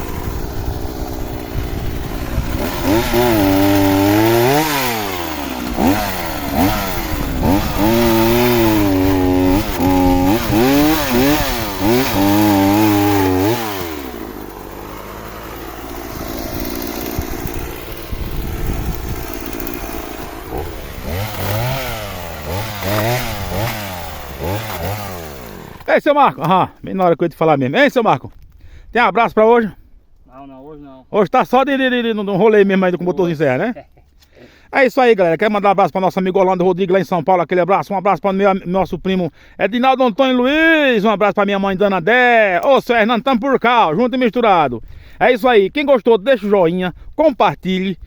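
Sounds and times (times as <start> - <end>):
chainsaw revving and idling: 0.0 - 25.9.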